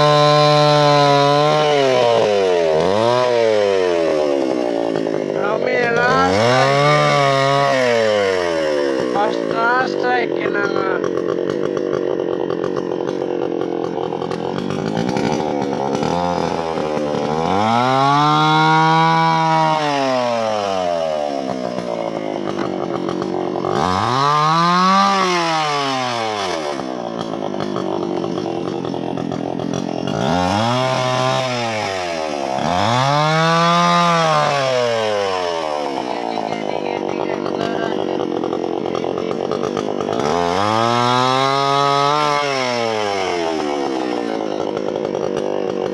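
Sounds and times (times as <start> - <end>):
chainsaw cutting wood: 0.0 - 45.9.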